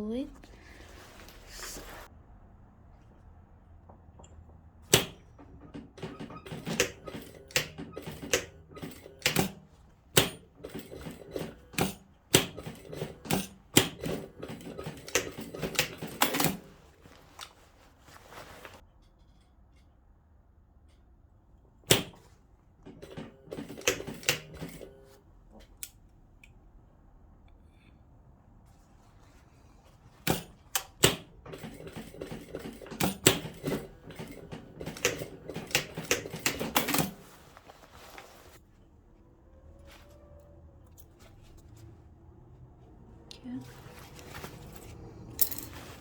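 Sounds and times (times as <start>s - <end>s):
sewing machine clicking: 4.9s - 16.7s, 22.8s - 25.1s, 30.2s - 37.3s.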